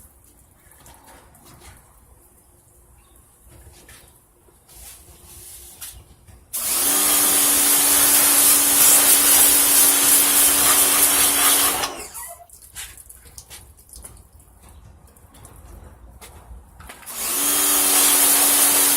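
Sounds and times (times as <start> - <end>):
pressure washer motor hum: 6.6 - 12.3, 17.1 - 18.9
hiss of water spray: 6.6 - 13.0.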